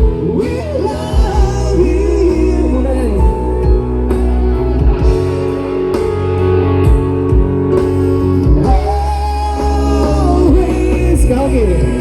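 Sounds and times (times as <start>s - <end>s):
bass guitar: 0.0s - 12.0s
drums: 0.0s - 12.0s
electric guitar: 0.0s - 12.0s
held lead melody: 0.0s - 12.0s.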